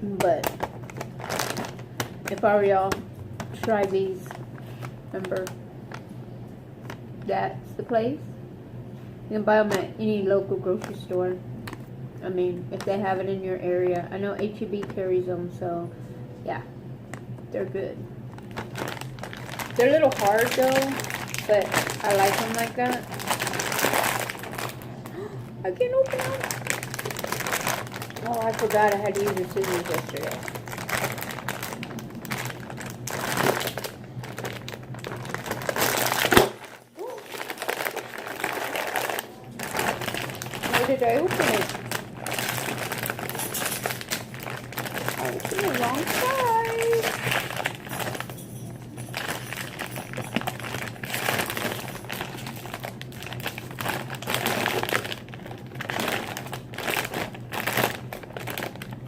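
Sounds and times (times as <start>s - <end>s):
plastic bag crinkling: 0.0s - 6.2s, 18.2s - 59.0s
plastic bag sharp crack: 0.2s - 3.9s, 26.0s - 48.2s.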